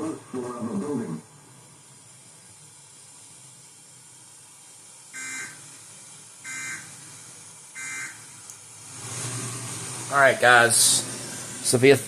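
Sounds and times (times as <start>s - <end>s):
faint radio hiss: 0.0s - 12.0s
buzzy digital bleeps: 6.5s - 6.8s.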